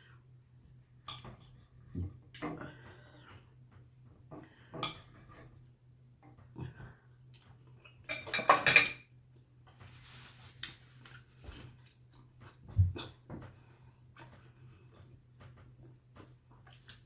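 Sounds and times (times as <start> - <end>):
cutlery clinking on a plate: 8.1 - 9.1
soft scratching: 9.7 - 11.7.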